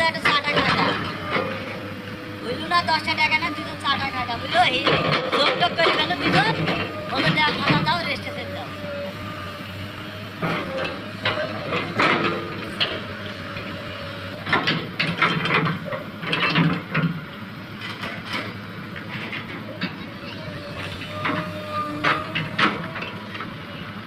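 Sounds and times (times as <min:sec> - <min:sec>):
indistinct voices: 0:00.0 - 0:16.7
engine running: 0:00.0 - 0:24.0
metal clanks and knocks: 0:04.6 - 0:08.0, 0:10.4 - 0:13.7, 0:14.4 - 0:17.2, 0:21.2 - 0:23.5.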